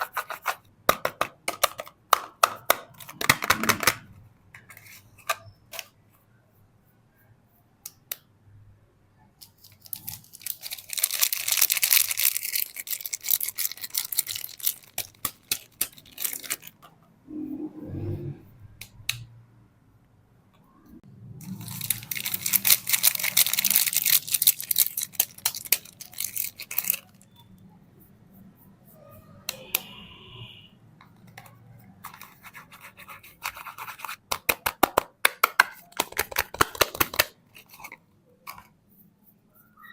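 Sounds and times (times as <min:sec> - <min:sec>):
packaging crinkling and scratching: 0:09.4 - 0:16.8, 0:21.4 - 0:27.4, 0:35.8 - 0:38.8.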